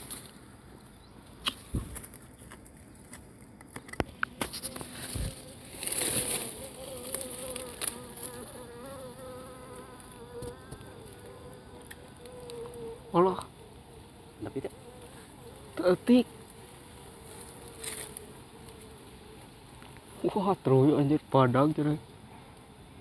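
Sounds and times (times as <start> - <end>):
bees buzzing: 4.1 - 21.1.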